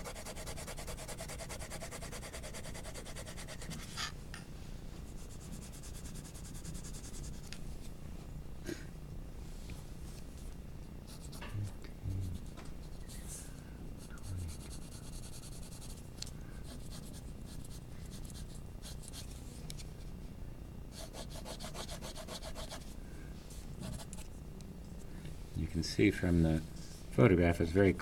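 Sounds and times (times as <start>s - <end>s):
pencil shading on paper: 0.0s - 4.1s, 5.2s - 7.4s, 14.1s - 16.0s, 16.6s - 19.2s, 21.0s - 22.8s.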